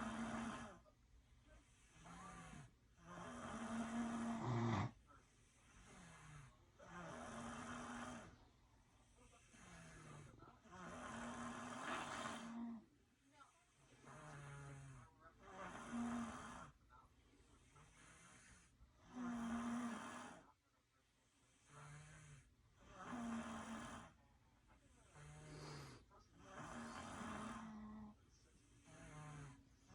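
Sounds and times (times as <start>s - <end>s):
rasping snores: 0.0s - 0.8s, 1.6s - 8.4s, 9.2s - 12.8s, 13.8s - 16.8s, 17.6s - 20.5s, 21.4s - 24.2s, 24.9s - 29.9s.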